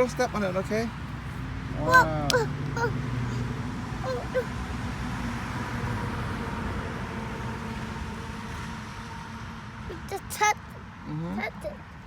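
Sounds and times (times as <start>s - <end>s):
short voice sound: 1.8s - 2.9s.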